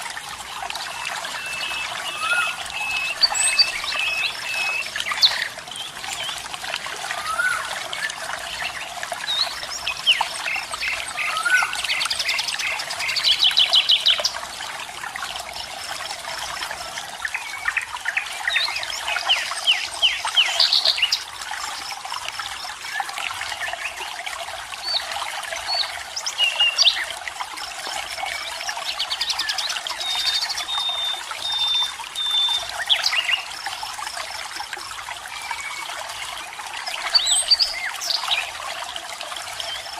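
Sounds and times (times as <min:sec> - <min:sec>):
birds singing: 0:00.9 - 0:14.4, 0:28.2 - 0:33.6, 0:36.9 - 0:38.6.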